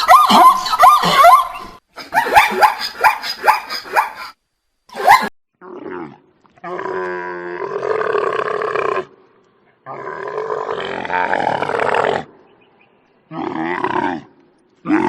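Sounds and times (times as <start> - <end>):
dog barking: 2.2 - 4.3.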